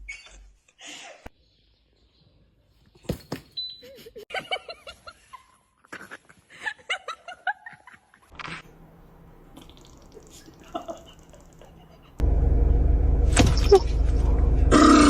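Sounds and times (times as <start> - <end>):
person laughing: 3.8 - 8.3, 10.1 - 12.2
steady low hum: 10.2 - 15.0.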